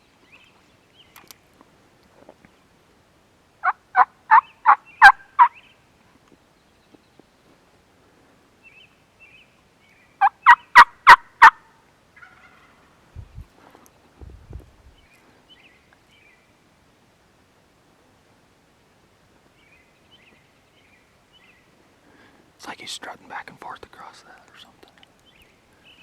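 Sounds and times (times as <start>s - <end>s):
turkey yelps: 3.6s - 5.6s, 10.2s - 11.6s, 12.2s - 12.8s.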